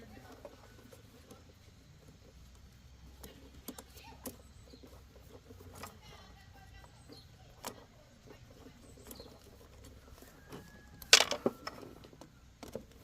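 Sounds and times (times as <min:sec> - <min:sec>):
metal parts clattering rattle: 0:11.1 - 0:11.5.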